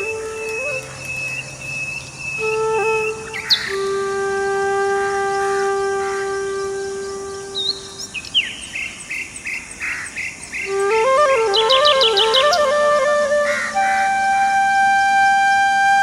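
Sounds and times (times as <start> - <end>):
wind instrument long note: 0.0 - 1.4, 2.4 - 8.0, 10.7 - 16.0.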